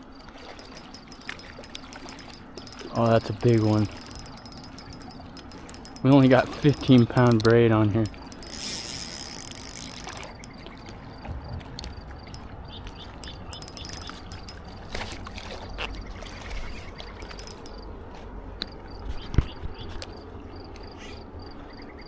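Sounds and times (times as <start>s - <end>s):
fishing reel clicks: 0.5s - 10.7s, 13.2s - 15.0s, 17.2s - 17.8s.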